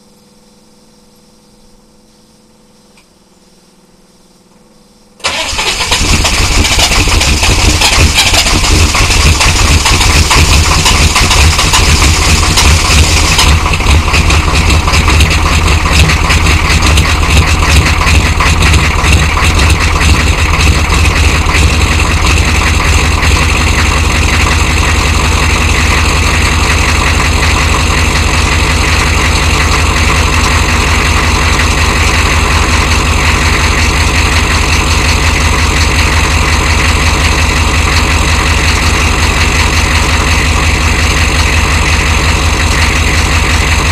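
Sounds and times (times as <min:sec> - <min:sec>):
diesel engine idling: 0:05.2 - 0:43.9.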